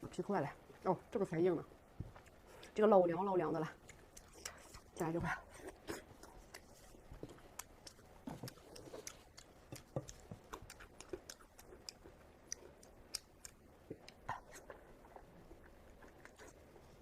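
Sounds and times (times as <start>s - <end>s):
chewing mouth clicks: 3.8s - 5.1s, 5.7s - 16.8s.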